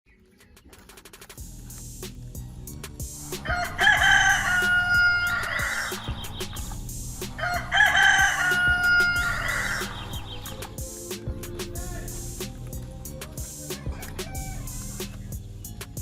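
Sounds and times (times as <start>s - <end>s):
music with steady beat: 0.4s - 16.0s
rooster crowing: 3.4s - 6.2s, 7.3s - 10.3s, 13.6s - 15.2s.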